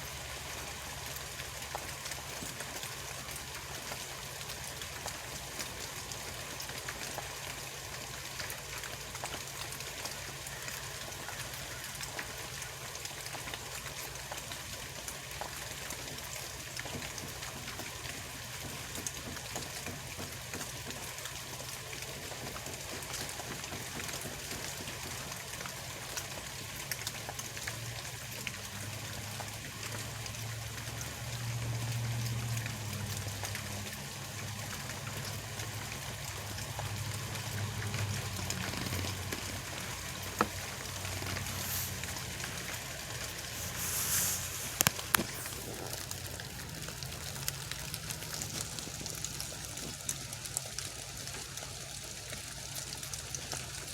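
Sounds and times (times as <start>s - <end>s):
steady hiss with crackle: 0.0s - 53.9s.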